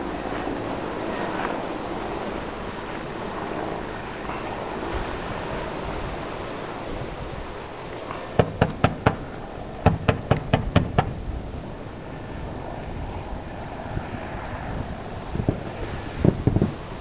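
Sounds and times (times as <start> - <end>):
wind and engine rush: 0.0 - 17.0
helicopter gun firing bursts: 8.4 - 11.2.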